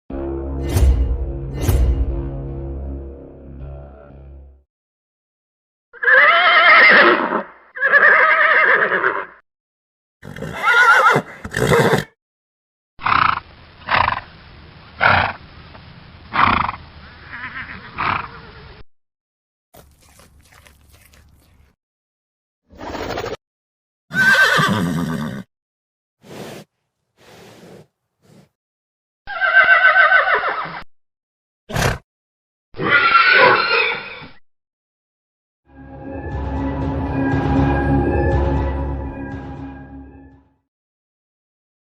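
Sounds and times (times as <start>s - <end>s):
horse whinnying: 6.0s - 9.4s, 10.2s - 12.1s, 24.1s - 25.5s, 29.3s - 30.8s, 32.8s - 34.4s
steady background hiss: 13.3s - 18.6s.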